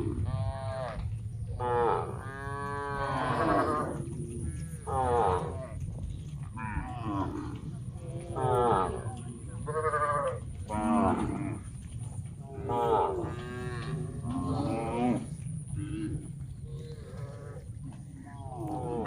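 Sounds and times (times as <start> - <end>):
cattle mooing: 0.0 - 5.8, 6.5 - 11.8, 12.4 - 19.0
low rumble: 0.0 - 19.0.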